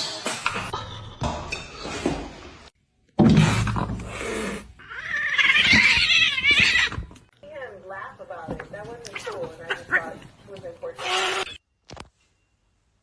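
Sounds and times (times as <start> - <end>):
cat yowling: 4.8 - 7.0.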